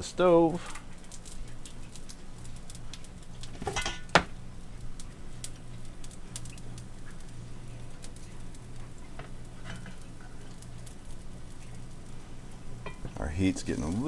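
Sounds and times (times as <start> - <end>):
food sizzling in a pan: 0.0 - 14.0.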